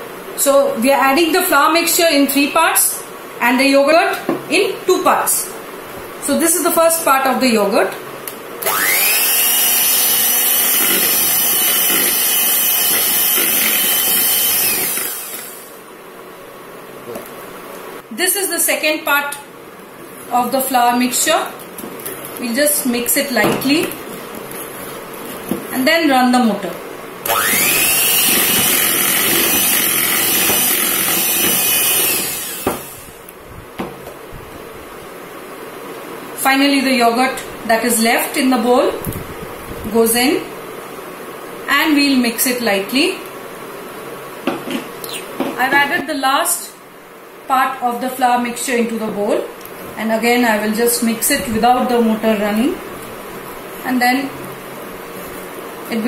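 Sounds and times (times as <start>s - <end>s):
hand blender motor whining: 8.6s - 15.7s, 27.2s - 33.2s.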